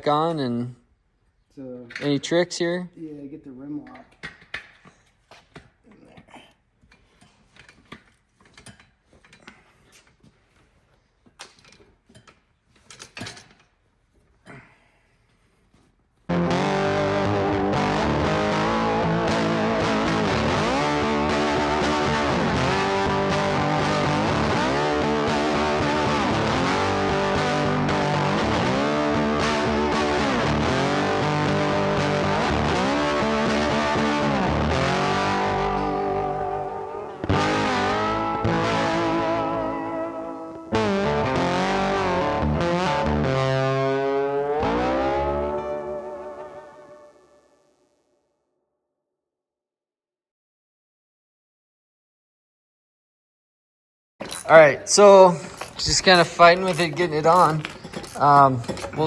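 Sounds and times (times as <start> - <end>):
steady bass: 16.3 - 46.6
distorted electric guitar: 16.3 - 47.8, 54.2 - 59.0.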